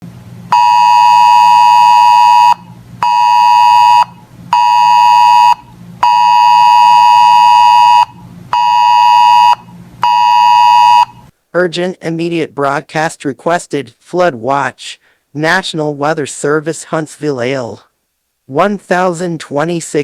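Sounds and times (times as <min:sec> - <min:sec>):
weather radio alarm beeping: 0:00.5 - 0:11.2.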